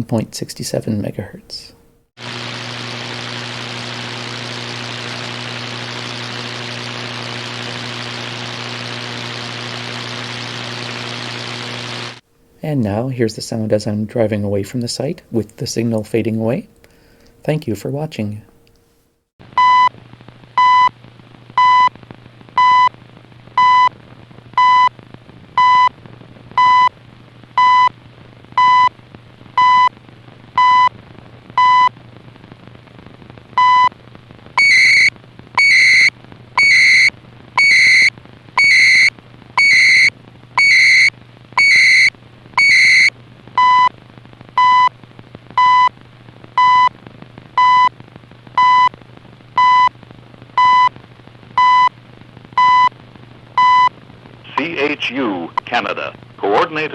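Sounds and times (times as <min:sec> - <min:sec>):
receiver hiss: 0:00.0 - 0:56.9
steady low hum: 0:00.0 - 0:56.9
warbling data bursts: 0:34.6 - 0:43.1
short tone pulses: 0:34.6 - 0:43.9.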